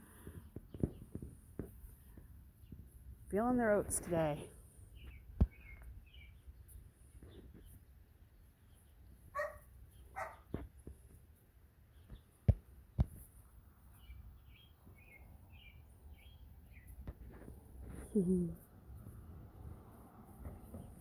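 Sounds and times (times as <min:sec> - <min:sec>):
small birds chirping: 0:00.0 - 0:19.2
puppies barking: 0:09.4 - 0:10.5.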